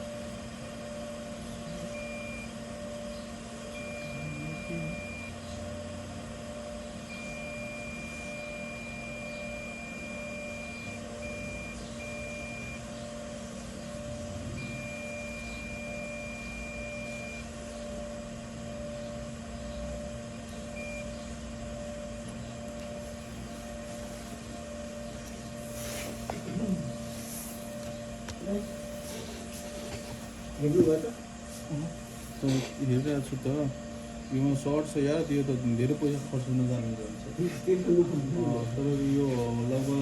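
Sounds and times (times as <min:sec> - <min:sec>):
multimeter continuity beeps: 0:00.0 - 0:31.2
steady electrical hum: 0:00.0 - 0:40.0.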